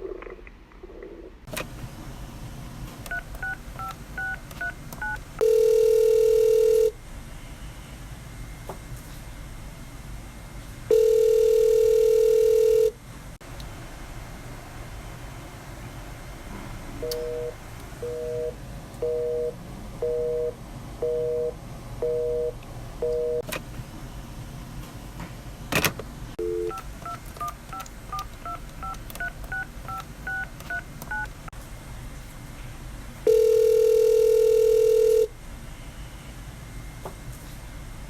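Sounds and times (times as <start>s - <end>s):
busy signal beeps: 5.0s - 6.9s, 10.9s - 12.9s, 17.0s - 23.4s, 26.4s - 26.8s, 33.3s - 35.3s
long ringback tone: 5.4s - 7.0s, 10.9s - 13.0s, 17.1s - 23.4s, 33.3s - 35.3s
telephone line click: 17.0s - 18.2s
touch-tone keypad beeps: 26.4s - 31.3s.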